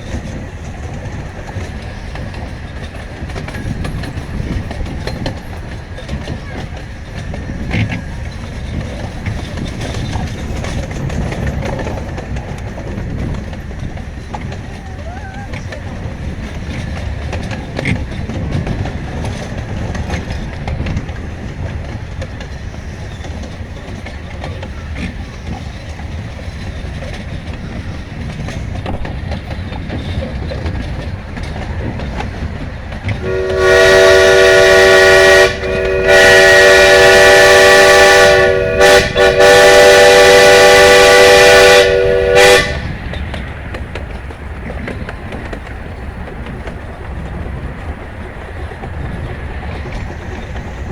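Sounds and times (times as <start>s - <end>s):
steam train rumbling on track: 0.0s - 50.9s
steam whistle blast: 33.2s - 42.9s.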